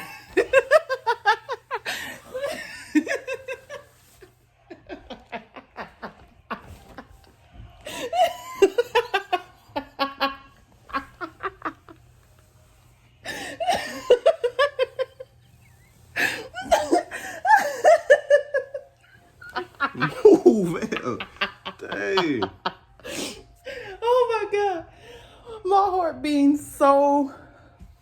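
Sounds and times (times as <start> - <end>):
person laughing hard: 0.0 - 3.9, 7.9 - 12.0, 13.3 - 15.2, 16.2 - 23.4.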